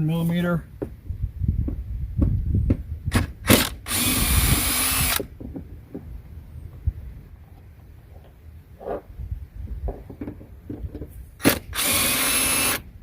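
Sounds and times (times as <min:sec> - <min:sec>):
power drill spinning: 0:03.4 - 0:05.3, 0:11.4 - 0:12.9.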